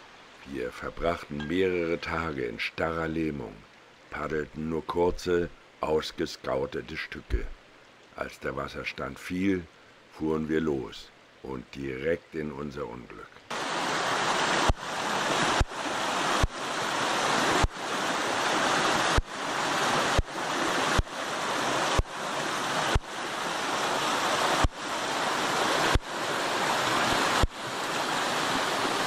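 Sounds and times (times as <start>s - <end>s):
rushing river water: 13.5s - 29.0s.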